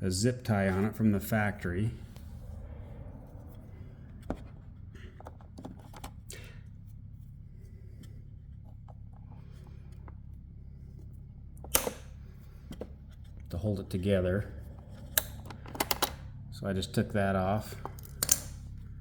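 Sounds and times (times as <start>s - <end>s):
steady low hum: 0.0s - 19.0s
plastic snapping: 11.6s - 12.2s, 17.9s - 18.6s.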